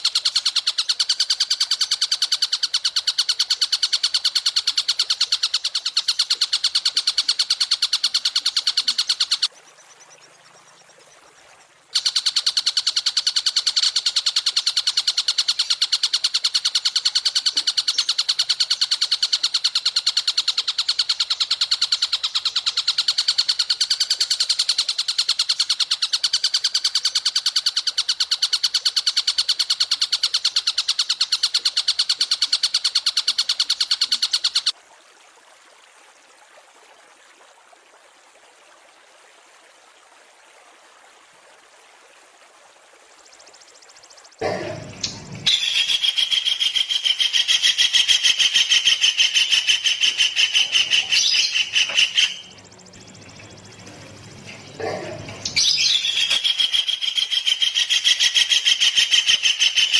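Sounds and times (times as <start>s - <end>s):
bird high-pitched trill: 45.0s - 59.9s.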